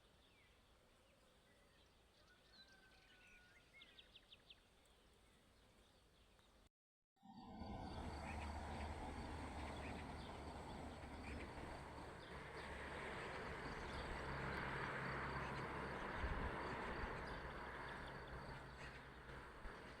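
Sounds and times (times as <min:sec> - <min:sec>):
low hum: 0:07.2 - 0:14.6
rushing outdoor background noise: 0:07.4 - 0:20.0.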